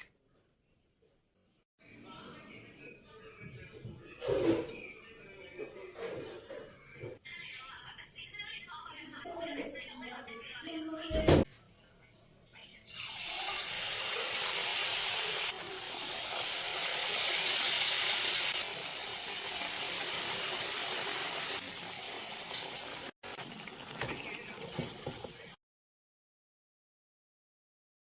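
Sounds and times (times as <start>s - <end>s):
fritters sizzling in hot oil: 12.9s - 25.5s.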